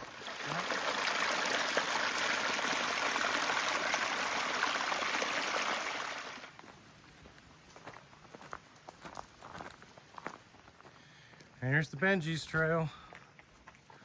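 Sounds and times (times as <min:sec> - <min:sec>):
stream rushing: 0:00.0 - 0:06.6.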